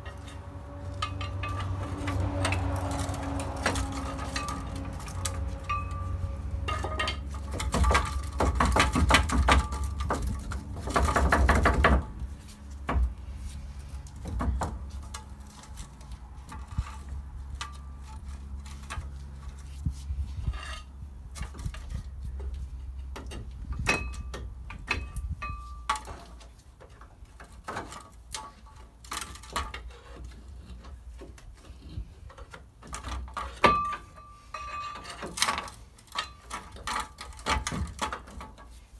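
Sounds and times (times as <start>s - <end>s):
metal clinking and knocking: 0.0s - 13.2s
low steady hum: 0.0s - 26.1s.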